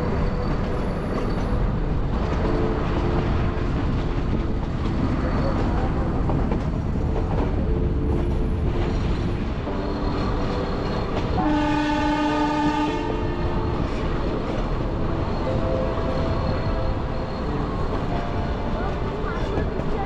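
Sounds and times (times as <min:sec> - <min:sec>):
train wheels rumbling: 0:00.0 - 0:20.0
train horn: 0:11.2 - 0:14.6.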